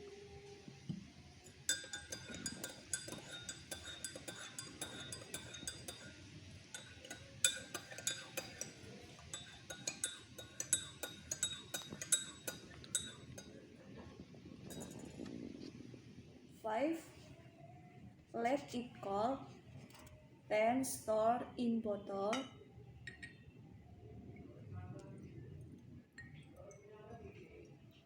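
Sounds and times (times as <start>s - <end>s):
spoon clinking in a glass: 1.4s - 13.6s, 14.6s - 15.3s, 22.3s - 23.5s, 26.2s - 26.9s.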